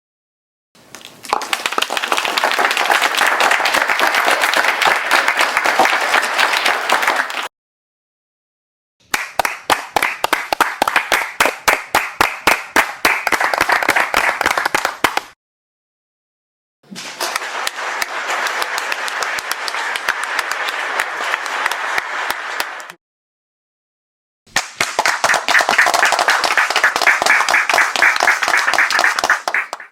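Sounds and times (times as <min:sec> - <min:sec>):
audience clapping: 0:01.0 - 0:07.5, 0:09.1 - 0:15.4, 0:16.9 - 0:23.0, 0:24.5 - 0:29.9.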